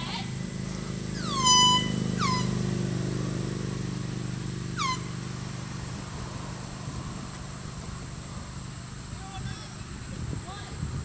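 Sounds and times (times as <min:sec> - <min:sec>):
canned air horn toots: 0:01.2 - 0:02.7, 0:04.8 - 0:05.1.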